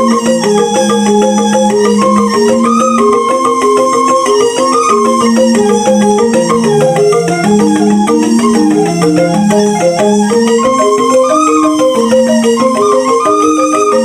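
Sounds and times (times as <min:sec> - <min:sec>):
bamboo xylophone playing: 0:00.0 - 0:14.0.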